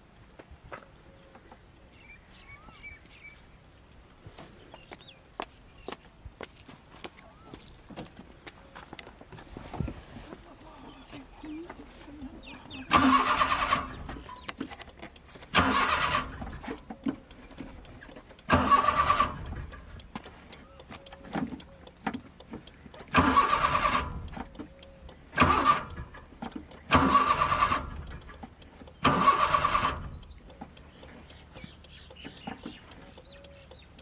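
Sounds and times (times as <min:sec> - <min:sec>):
car starter motor cranking: 0:12.4 - 0:34.0.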